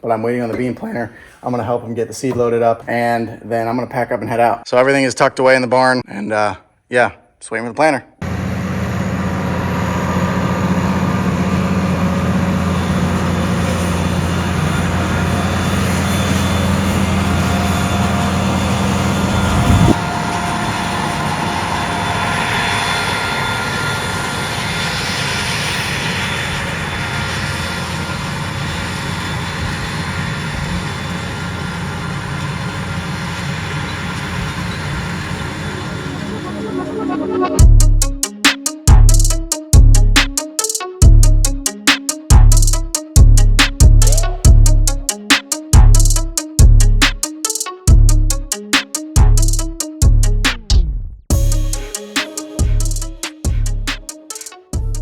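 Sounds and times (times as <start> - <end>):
vehicle engine humming: 8.2 - 38.2, 42.3 - 45.2, 45.8 - 47.2.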